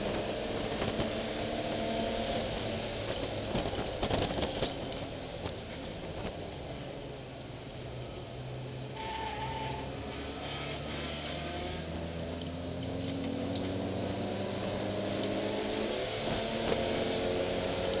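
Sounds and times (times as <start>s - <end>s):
car engine accelerating: 8.5s - 18.0s.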